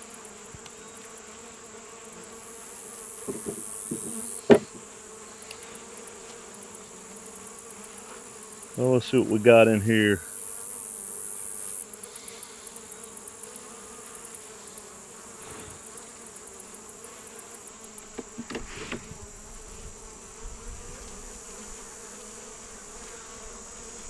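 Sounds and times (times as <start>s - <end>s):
bees buzzing: 0.0s - 24.0s
sharp knocks: 3.3s - 4.8s, 18.2s - 19.1s.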